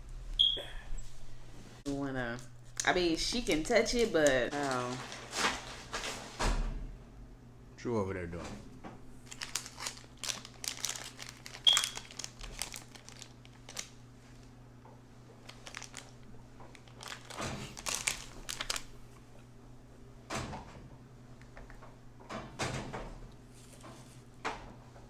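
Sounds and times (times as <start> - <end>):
wrapping crinkling: 2.6 - 6.4, 9.2 - 14.0, 15.4 - 19.2.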